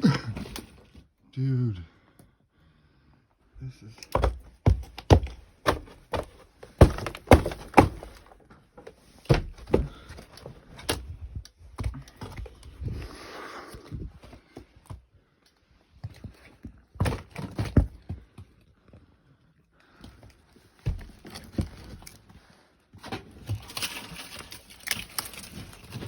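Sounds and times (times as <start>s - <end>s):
footsteps on debris: 4.1s - 12.8s, 20.8s - 22.1s.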